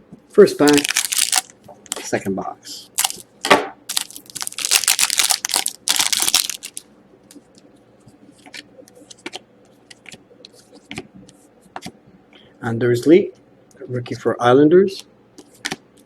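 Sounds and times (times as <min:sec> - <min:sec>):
foil wrapper crinkling: 0:00.6 - 0:02.0, 0:03.0 - 0:03.3, 0:03.9 - 0:06.8
cards clicking and rustling: 0:03.9 - 0:06.8.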